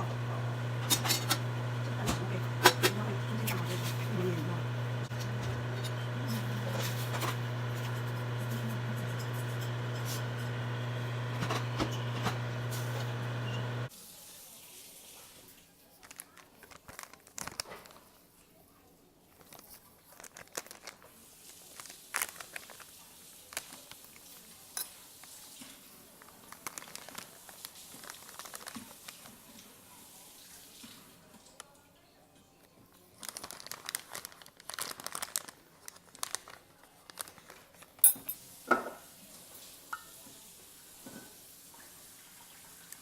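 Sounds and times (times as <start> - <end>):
appliance hum: 0.0 - 13.9
packaging crinkling and clicks: 16.0 - 18.1, 19.4 - 22.9, 26.2 - 29.4, 33.2 - 38.0.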